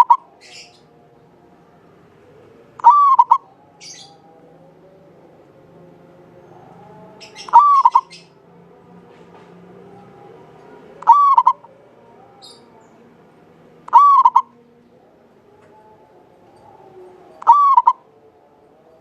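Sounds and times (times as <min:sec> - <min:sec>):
dove cooing: 0:00.0 - 0:00.9, 0:02.6 - 0:04.2, 0:06.6 - 0:08.4, 0:11.0 - 0:11.8, 0:13.8 - 0:14.7, 0:16.6 - 0:18.5.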